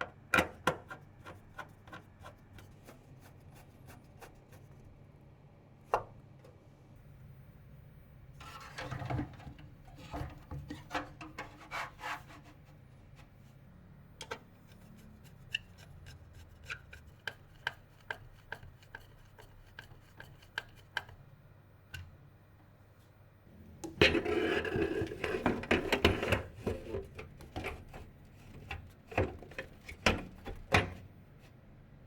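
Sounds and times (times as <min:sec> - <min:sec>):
rubbing and scraping: 0:08.4 - 0:13.6, 0:24.0 - 0:30.7.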